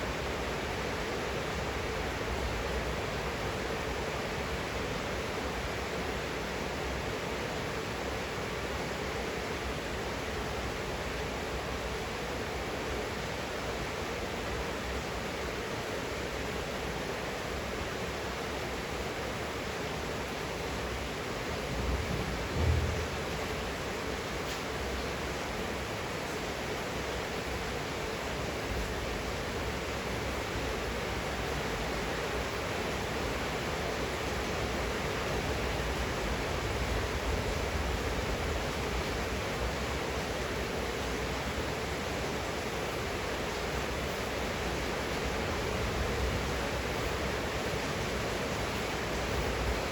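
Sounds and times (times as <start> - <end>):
steady rain: 0.0 - 49.9
low rumble: 21.9 - 23.6.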